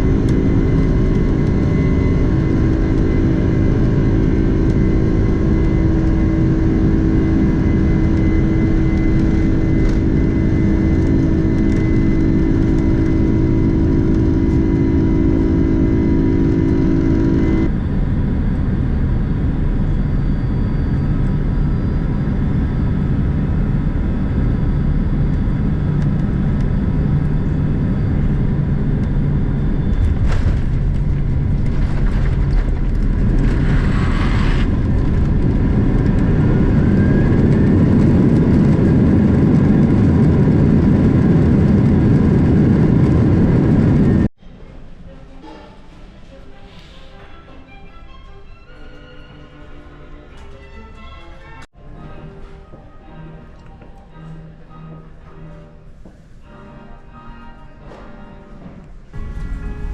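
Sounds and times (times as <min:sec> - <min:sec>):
steady tones: 0:00.0 - 0:20.0, 0:59.2 - 0:59.9
vehicle rumbling in motion: 0:00.0 - 0:44.3, 0:59.2 - 0:59.9.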